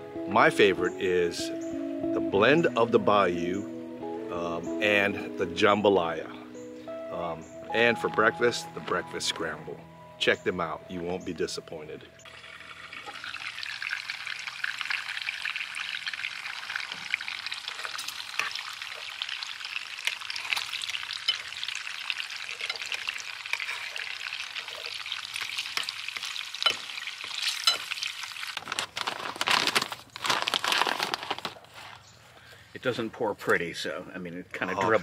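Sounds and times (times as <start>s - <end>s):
hot water pouring: 12.3s - 28.6s
water boiling on a stove: 12.3s - 28.6s.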